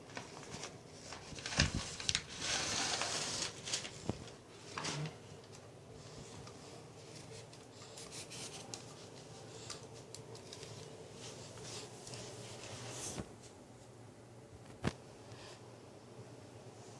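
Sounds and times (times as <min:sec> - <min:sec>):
packaging rubbing and scraping: 0:00.4 - 0:05.2.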